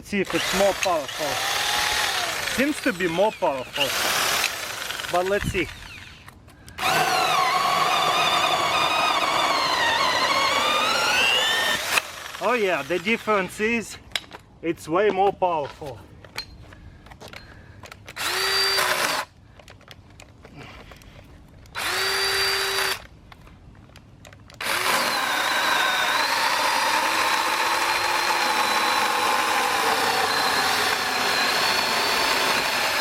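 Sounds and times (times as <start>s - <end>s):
electric chainsaw motor whining: 0.2s - 13.5s, 18.2s - 19.3s, 21.7s - 23.0s, 24.6s - 33.0s
chain cutting wood: 0.3s - 13.5s.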